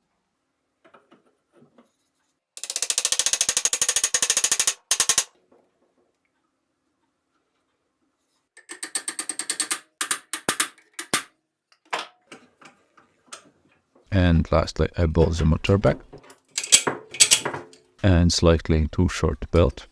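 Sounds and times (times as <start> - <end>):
ratchet wrench clicking: 2.6 - 5.3.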